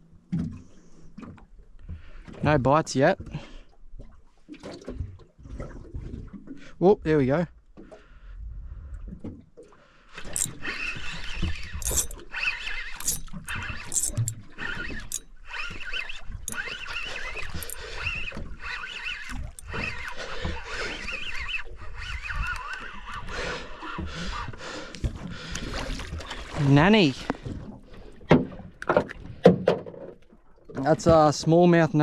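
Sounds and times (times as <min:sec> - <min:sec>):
fishing reel cranking: 0:10.2 - 0:24.5.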